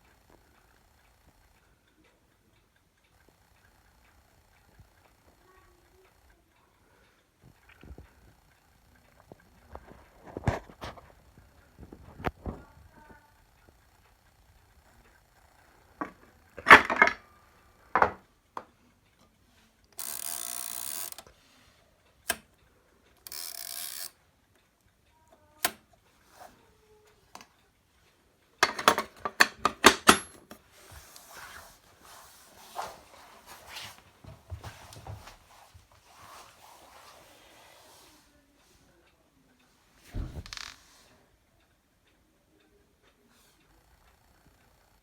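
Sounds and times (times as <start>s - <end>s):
typewriter clacking: 28.6s - 30.4s
typewriter key strikes: 28.6s - 30.4s.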